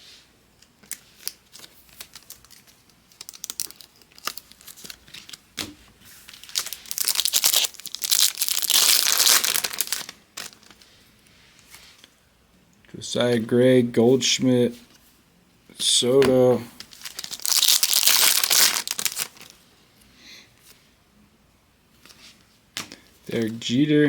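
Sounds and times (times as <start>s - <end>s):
wrapper crinkling and tearing: 0.8s - 5.5s, 6.3s - 10.8s, 16.8s - 19.6s.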